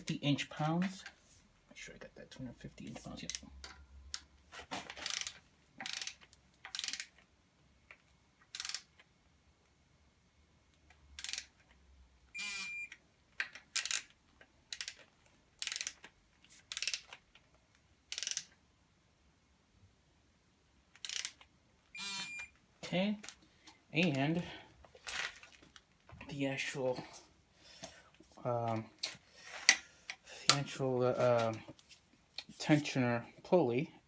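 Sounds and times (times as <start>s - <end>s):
ratchet wrench clicking: 5.0s - 7.2s, 8.5s - 8.9s, 11.2s - 11.5s, 13.7s - 14.1s, 14.7s - 15.0s, 15.6s - 16.0s, 16.7s - 17.2s, 18.1s - 18.5s, 21.0s - 21.4s.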